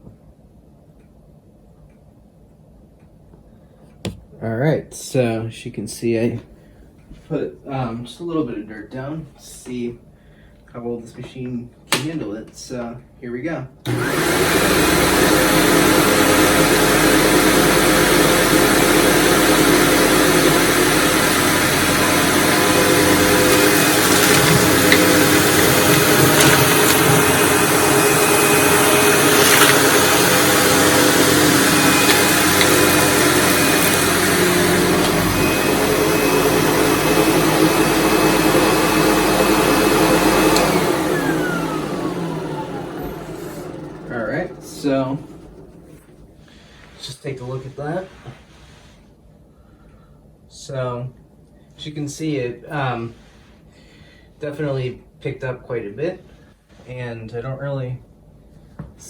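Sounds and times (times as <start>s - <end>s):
vacuum motor spinning down: 13.9s - 46.4s
vacuum cleaner running: 13.9s - 46.8s.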